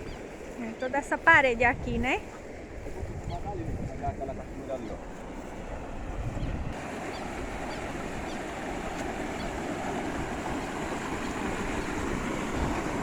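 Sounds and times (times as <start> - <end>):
water rushing down spillway: 6.8 - 13.0.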